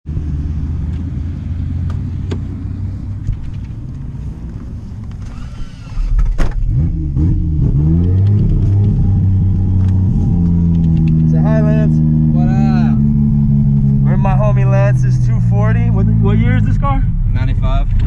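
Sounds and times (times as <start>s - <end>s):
car engine idling and revving: 0.0s - 18.0s.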